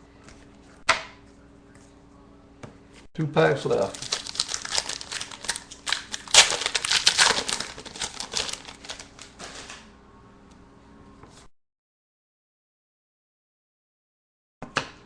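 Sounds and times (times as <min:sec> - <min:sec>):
card pack wrapper crinkling: 0:03.8 - 0:09.6.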